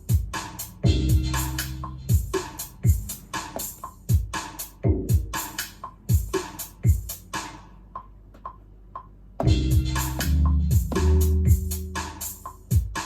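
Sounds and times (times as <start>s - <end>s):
loud held bass line: 0.0s - 4.2s, 9.4s - 12.2s
electro house beat: 0.0s - 13.0s.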